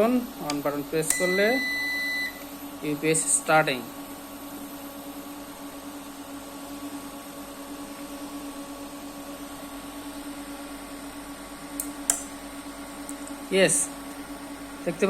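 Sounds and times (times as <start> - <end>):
electrical hum: 0.0 - 15.0
sharp click: 11.8 - 12.3.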